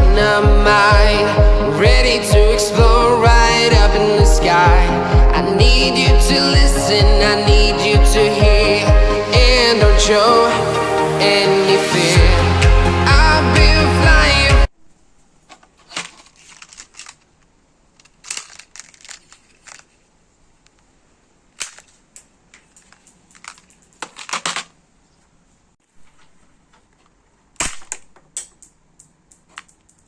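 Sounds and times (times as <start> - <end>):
plastic clicks and snaps: 15.4 - 19.9, 21.6 - 24.7, 26.7 - 30.0.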